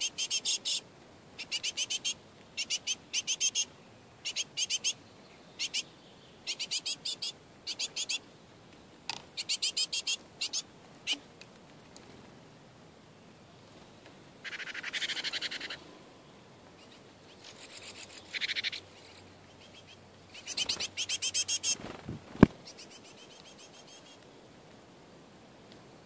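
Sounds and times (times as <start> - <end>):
birds chattering calls: 0.0 - 8.3, 9.3 - 11.3, 13.6 - 24.2.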